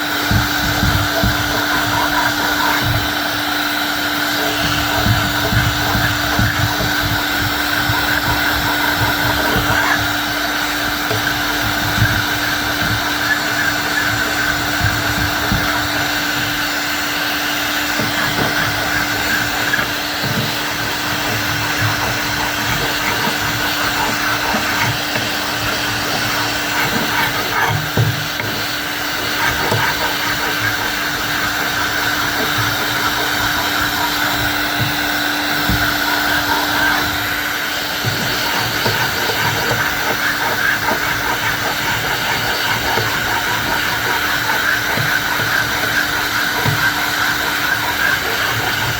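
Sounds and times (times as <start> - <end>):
small electric tool motor whine: 0.0 - 48.9.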